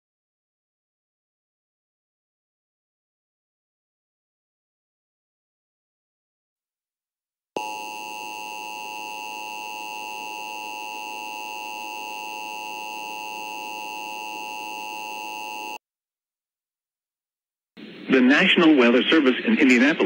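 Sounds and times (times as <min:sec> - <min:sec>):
two-tone alarm: 0:07.6 - 0:15.8.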